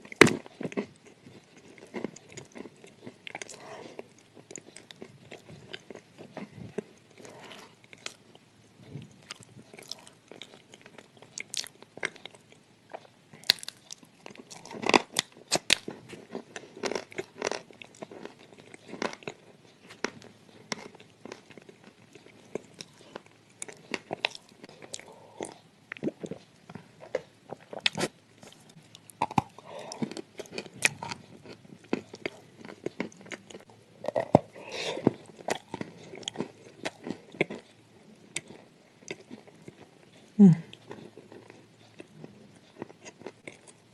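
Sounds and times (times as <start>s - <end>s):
chewing crunchy clay: 9.2s - 43.9s.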